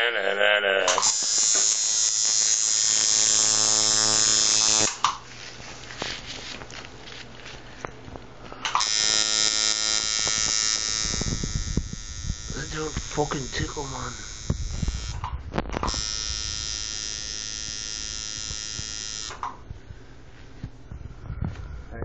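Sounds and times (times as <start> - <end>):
tattoo machine buzzing: 0.9 - 5.2, 8.8 - 19.6.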